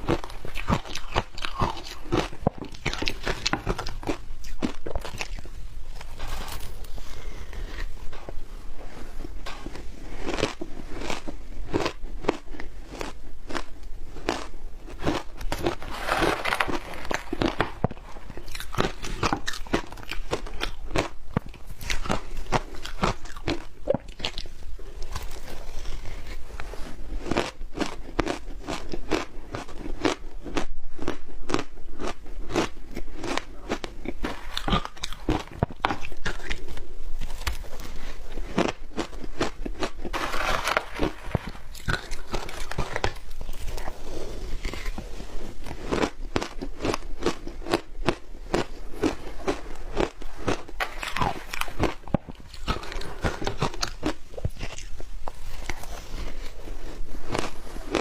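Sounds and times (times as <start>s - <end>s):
chewing crushed ice: 0.0s - 8.4s, 9.5s - 58.0s.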